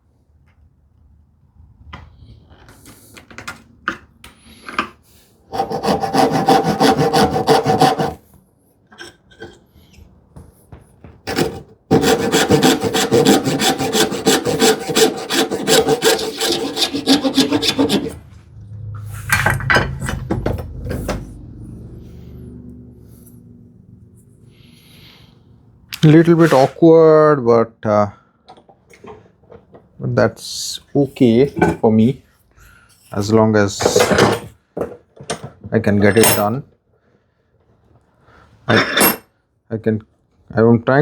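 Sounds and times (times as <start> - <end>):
hand saw cutting wood: 5.5 - 8.2, 11.3 - 18.2.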